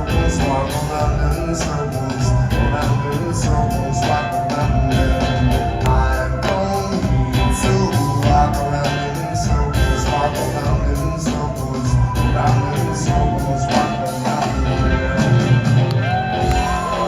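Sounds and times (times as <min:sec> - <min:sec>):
live rock band playing: 0:00.0 - 0:17.0.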